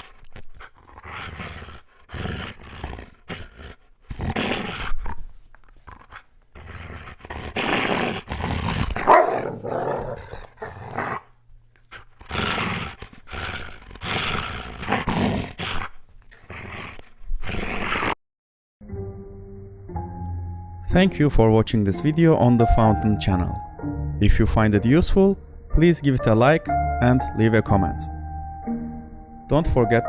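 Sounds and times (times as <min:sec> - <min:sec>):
large dog growling: 0:00.0 - 0:11.3, 0:11.9 - 0:18.2
dog barking: 0:09.0 - 0:11.2.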